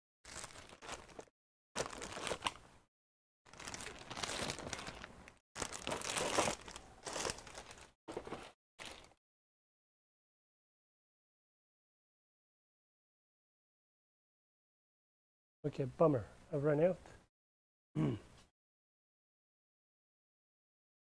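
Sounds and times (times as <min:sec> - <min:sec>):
plastic packaging crinkling: 0:00.3 - 0:02.6, 0:03.5 - 0:09.2.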